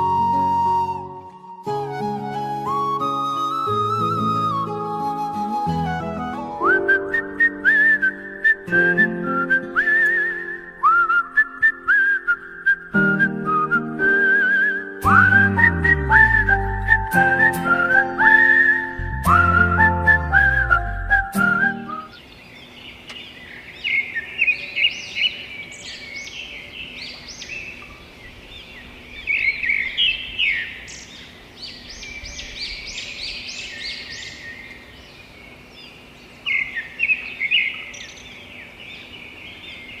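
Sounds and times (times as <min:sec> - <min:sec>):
music: 0:00.0 - 0:22.1
small birds chirping: 0:15.6 - 0:40.0.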